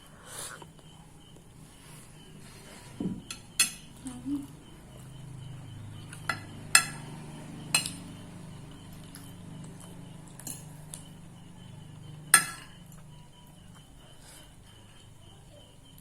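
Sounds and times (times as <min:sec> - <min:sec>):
cutlery clinking against plate: 0:03.0 - 0:04.0, 0:06.1 - 0:07.0, 0:07.8 - 0:08.1, 0:12.3 - 0:13.0.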